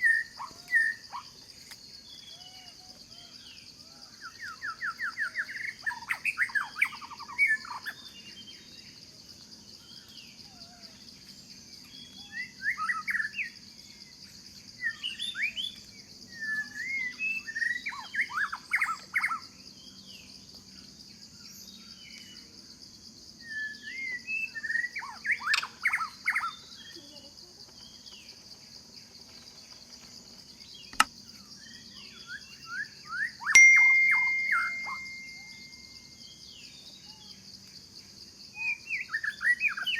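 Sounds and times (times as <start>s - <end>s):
high insect drone: 0.0s - 39.9s
birds chirping: 33.5s - 36.5s.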